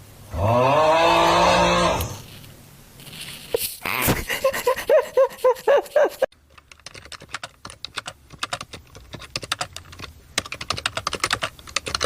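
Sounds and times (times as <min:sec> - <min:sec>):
rapid irregular clicking: 0:06.4 - 0:12.0.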